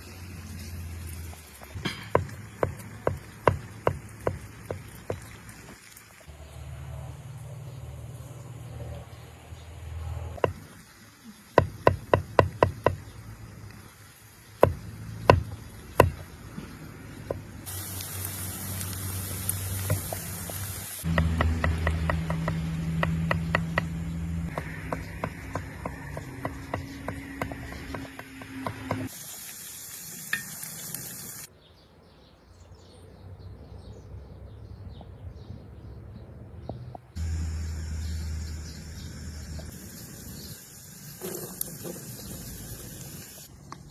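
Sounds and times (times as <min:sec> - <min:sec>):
sharp cooking knocks: 0:01.8 - 0:05.2, 0:19.8 - 0:29.1
food sizzling: 0:17.6 - 0:23.3, 0:24.4 - 0:31.5, 0:37.2 - 0:43.5.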